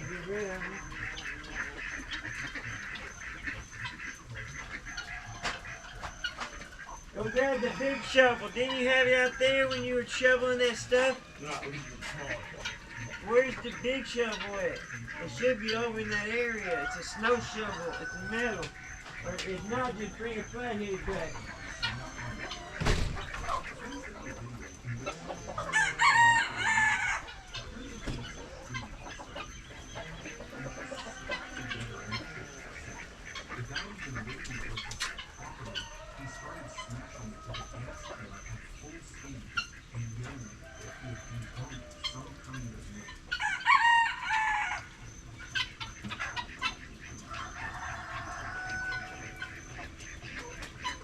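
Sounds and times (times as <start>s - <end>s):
chickens clucking: 0.0s - 51.0s
rooster crowing: 5.0s - 9.9s, 16.5s - 24.3s, 25.4s - 29.0s, 30.0s - 33.0s, 35.2s - 38.4s, 40.4s - 42.6s, 43.3s - 45.2s, 47.2s - 51.0s.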